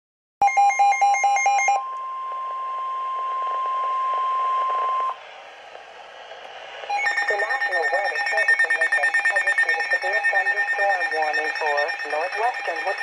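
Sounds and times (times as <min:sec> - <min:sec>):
steady warning alarm tone: 0:00.4 - 0:05.2, 0:06.9 - 0:13.0
radio hiss: 0:03.2 - 0:13.0
rapid beeping: 0:06.9 - 0:13.0.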